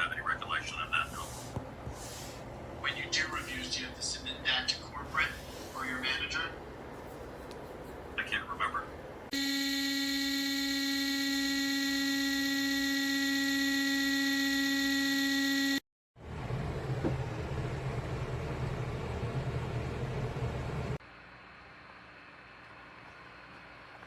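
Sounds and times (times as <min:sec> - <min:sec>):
loud low electric buzz: 0:09.3 - 0:21.0.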